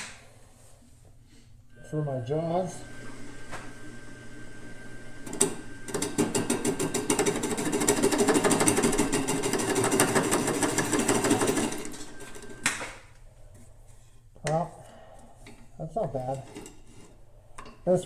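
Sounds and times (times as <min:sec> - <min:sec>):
lathe tool clattering on wood: 0:05.3 - 0:12.0.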